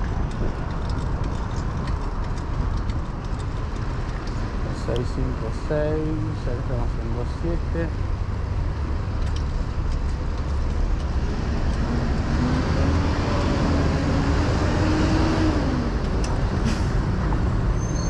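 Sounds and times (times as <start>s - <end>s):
motor vehicles running: 0.0s - 18.0s
vehicle accelerating past: 11.1s - 16.0s.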